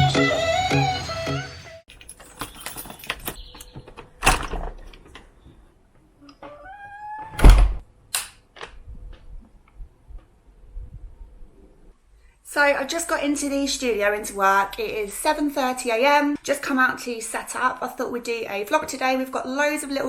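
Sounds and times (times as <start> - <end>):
short rising squeak: 6.4 - 7.4
loud thump: 7.4 - 7.8.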